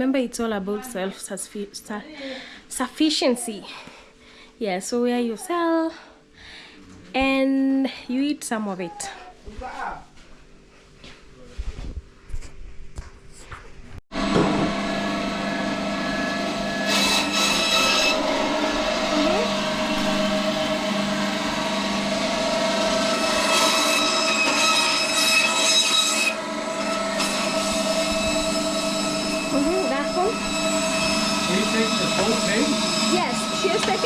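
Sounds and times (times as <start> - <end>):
electric bone saw running: 14.1 - 34.0.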